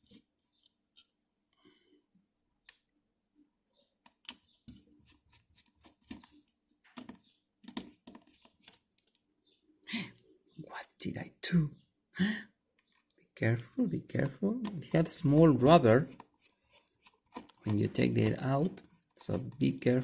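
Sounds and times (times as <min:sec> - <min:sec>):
small plastic parts clicking: 0:05.5 - 0:09.3.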